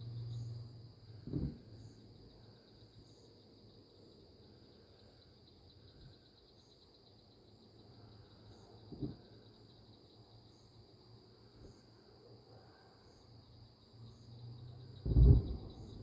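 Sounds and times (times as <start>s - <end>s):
crickets chirring: 0.0s - 16.0s
dull low thump: 1.2s - 1.6s, 15.0s - 16.0s.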